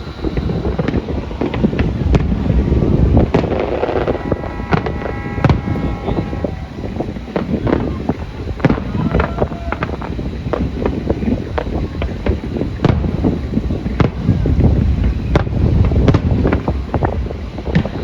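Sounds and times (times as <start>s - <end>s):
steady chord of tones: 0.0s - 8.9s
continuous low rumble: 0.0s - 18.0s
fireworks bangs and cracks: 0.0s - 18.0s.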